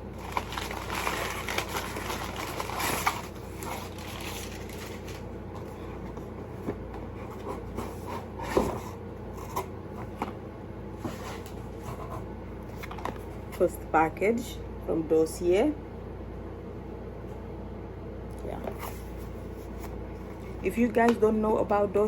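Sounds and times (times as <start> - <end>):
packaging scraping and rustling: 0.1 - 9.7.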